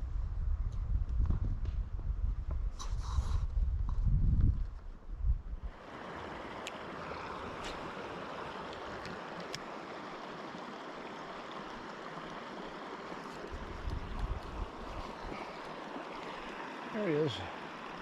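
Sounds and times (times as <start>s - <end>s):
creek water rushing over rocks: 5.7s - 18.0s.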